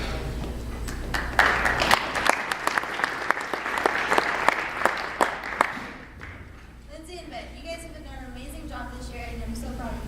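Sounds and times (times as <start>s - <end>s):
audience applauding: 0.8s - 6.6s.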